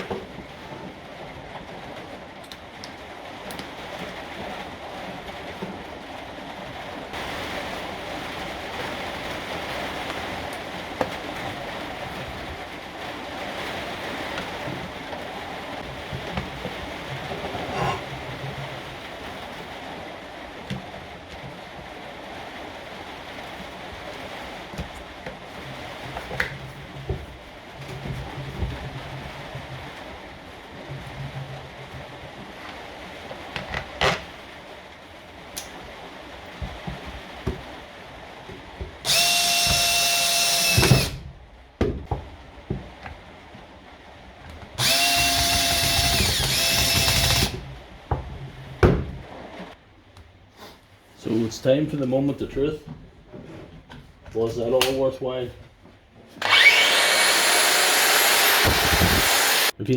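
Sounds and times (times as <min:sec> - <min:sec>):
power drill running: 0:39.0 - 0:41.2, 0:44.8 - 0:47.7, 0:56.4 - 0:59.7.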